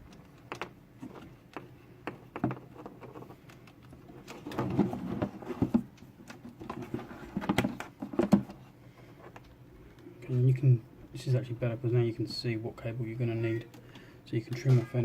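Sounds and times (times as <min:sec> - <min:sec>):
wire handling clicks and taps: 0:00.0 - 0:04.0.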